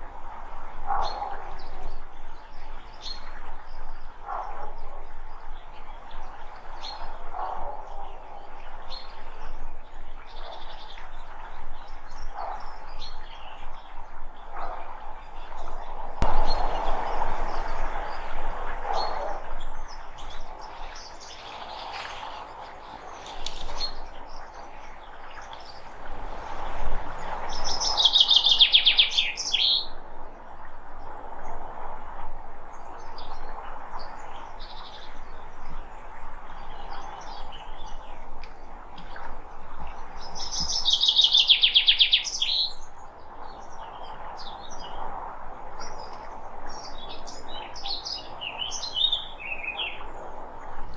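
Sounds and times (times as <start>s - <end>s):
steady background hiss: 0.0s - 50.9s
birds chirping and calling: 27.4s - 29.9s, 40.3s - 42.8s, 46.7s - 50.0s.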